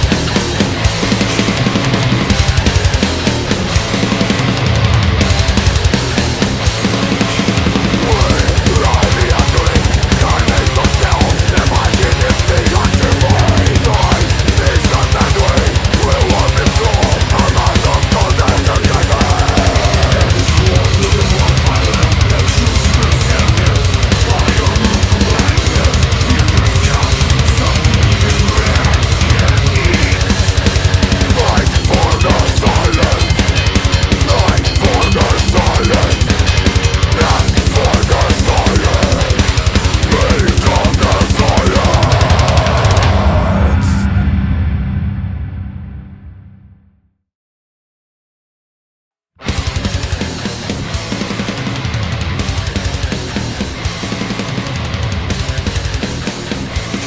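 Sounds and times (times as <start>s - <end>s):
heavy metal band playing: 0.0s - 46.8s, 49.4s - 57.0s
fast kick drum: 7.6s - 43.0s.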